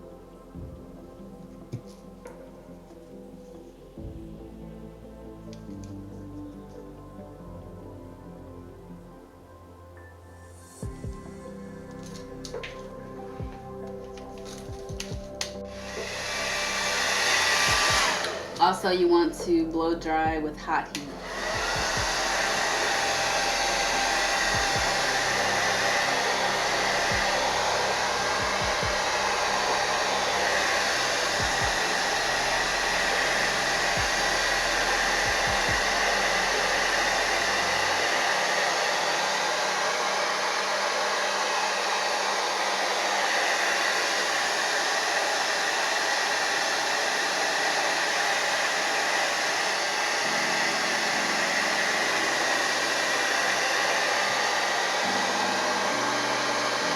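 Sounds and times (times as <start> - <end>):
hair dryer blowing: 10.6 - 56.9.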